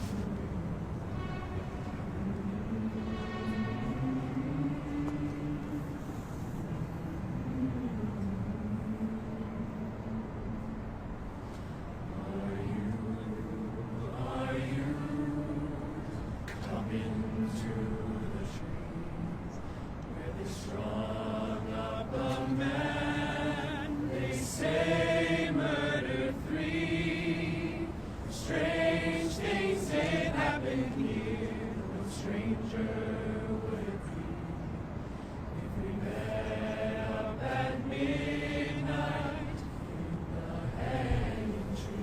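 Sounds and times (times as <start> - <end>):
crowd chanting in unison: 12.1 - 19.2, 20.1 - 42.0.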